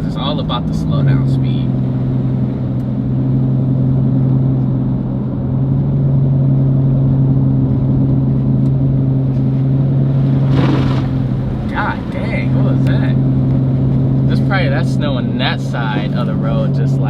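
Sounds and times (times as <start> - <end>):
car engine cruising: 0.0 - 17.0
short rush of noise: 10.2 - 11.7.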